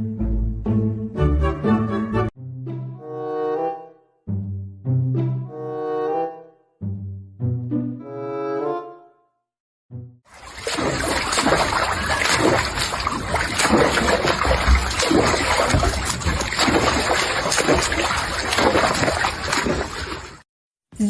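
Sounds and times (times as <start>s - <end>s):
water splashing: 10.3s - 20.4s.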